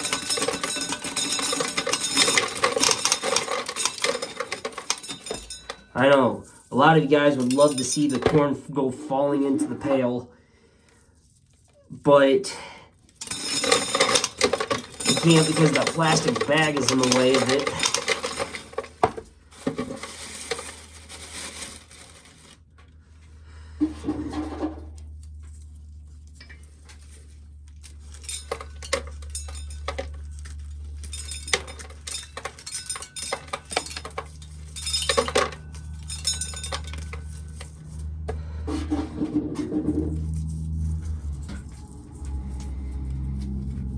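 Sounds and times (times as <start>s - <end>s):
corn kernels rattling on metal: 0.0s - 8.5s, 13.2s - 22.6s, 26.4s - 38.2s
low machine hum: 28.2s - 43.9s.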